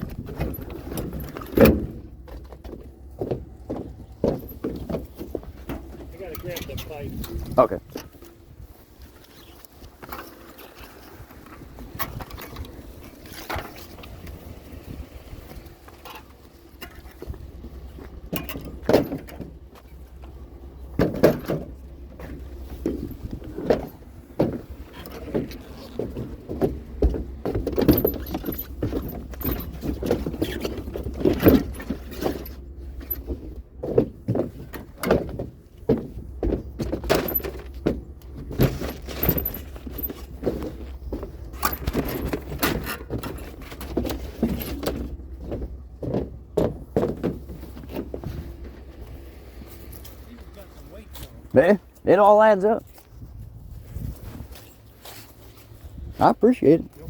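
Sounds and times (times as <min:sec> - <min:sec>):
steady low rumble: 0:00.0 - 0:34.3, 0:52.8 - 0:57.0
metal pipe clanking: 0:18.3 - 0:19.9.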